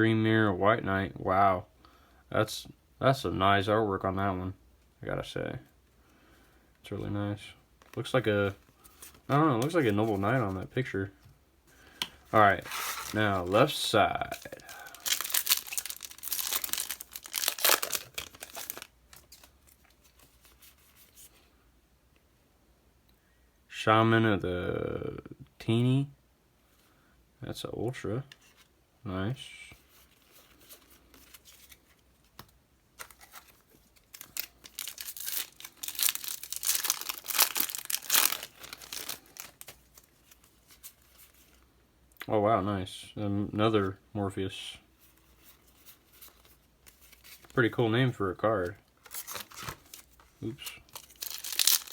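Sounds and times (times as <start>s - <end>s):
foil wrapper crackling: 12.2s - 20.2s, 33.0s - 41.3s, 49.0s - 51.9s.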